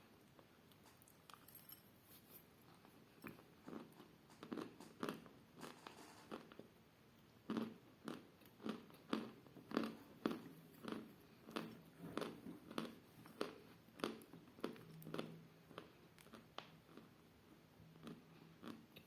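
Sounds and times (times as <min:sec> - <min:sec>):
person chewing chalk: 0:07.4 - 0:17.1.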